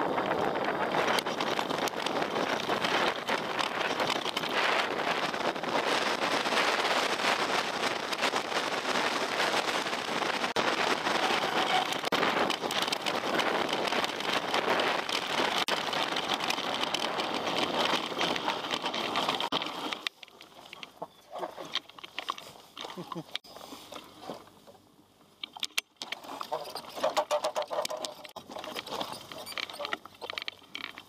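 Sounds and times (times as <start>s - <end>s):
bike tyres crackling on gravel: 0.0s - 21.0s
bike rattling clicks: 0.2s - 6.7s, 7.3s - 21.0s, 25.4s - 31.0s.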